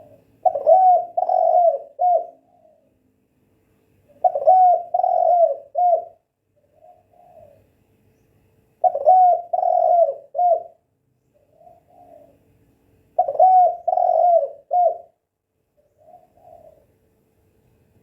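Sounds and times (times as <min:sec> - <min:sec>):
dove cooing: 0:00.0 - 0:03.0, 0:04.1 - 0:07.8, 0:08.8 - 0:10.8, 0:11.4 - 0:12.5, 0:13.1 - 0:15.2, 0:15.8 - 0:17.0.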